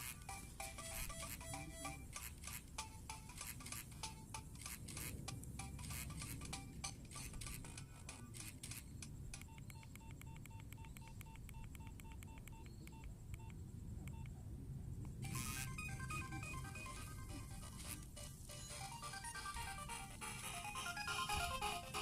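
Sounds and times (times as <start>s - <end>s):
keypad clicks: 0.3s - 14.4s.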